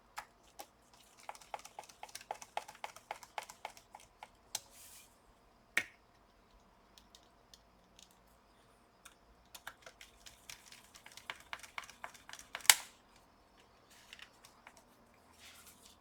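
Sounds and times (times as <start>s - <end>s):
light clicks and taps of handling: 5.8s - 8.3s, 9.0s - 15.2s.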